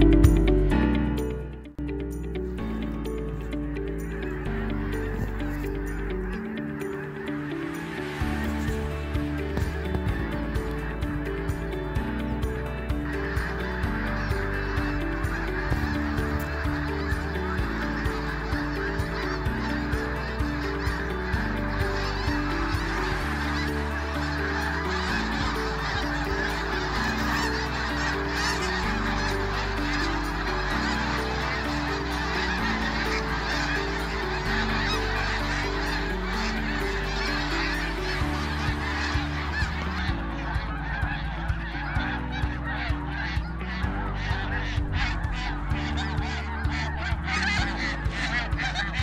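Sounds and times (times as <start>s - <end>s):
geese honking: 3.0s - 49.0s.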